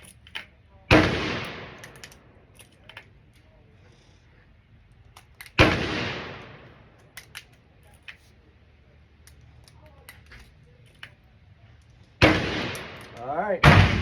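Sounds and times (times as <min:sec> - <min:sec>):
loud gunshot echoing: 0:00.9 - 0:01.9, 0:05.6 - 0:06.7, 0:12.2 - 0:14.0.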